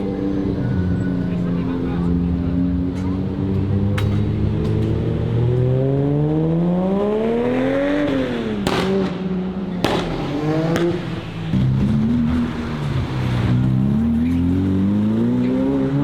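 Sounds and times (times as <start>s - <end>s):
car engine accelerating hard: 0.0s - 16.0s
sharp cracks: 8.6s - 10.9s.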